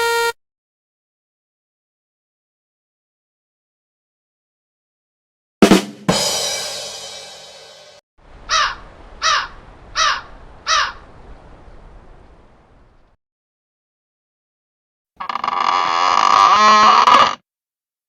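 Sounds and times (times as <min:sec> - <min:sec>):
crow cawing: 0:08.5 - 0:11.1.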